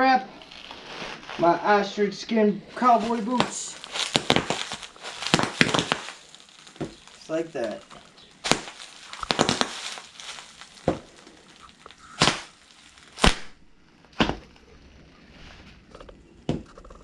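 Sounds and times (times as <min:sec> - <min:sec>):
bubble wrap popping: 0:00.3 - 0:01.8, 0:02.7 - 0:14.7.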